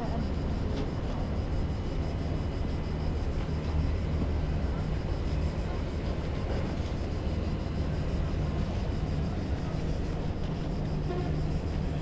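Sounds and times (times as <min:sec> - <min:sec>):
large engine idling: 0:00.0 - 0:12.0.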